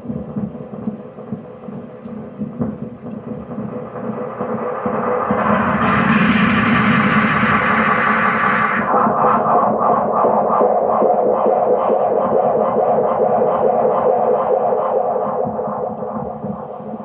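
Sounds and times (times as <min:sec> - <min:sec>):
distorted tape echo feedback: 0:02.6 - 0:17.0
pulsing echo repeats: 0:03.4 - 0:17.0.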